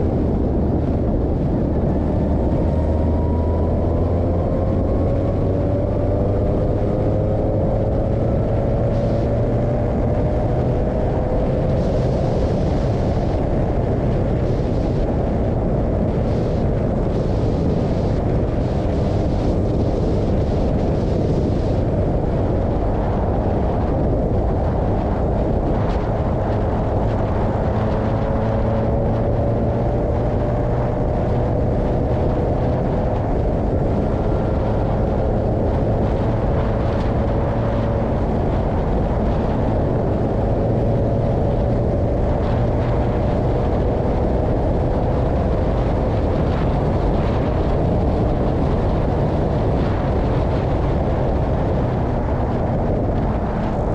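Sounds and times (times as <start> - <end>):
wind rush: 0.0 - 53.9.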